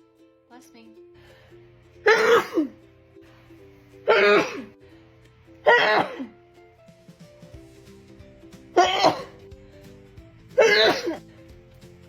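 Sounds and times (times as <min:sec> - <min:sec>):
background music with held notes: 0:00.0 - 0:12.0
woman sneezing: 0:02.0 - 0:02.8, 0:04.1 - 0:04.7, 0:05.6 - 0:06.3, 0:08.8 - 0:09.4, 0:10.6 - 0:11.2.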